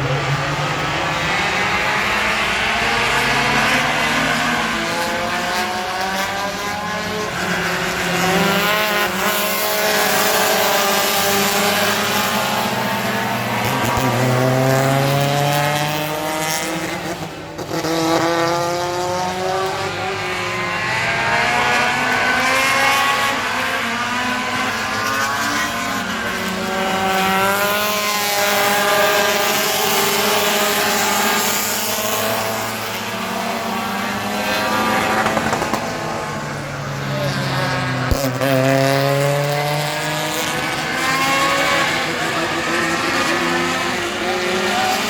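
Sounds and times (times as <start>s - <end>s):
race car engines accelerating: 0.0s - 45.0s
race cars passing by: 0.0s - 45.0s.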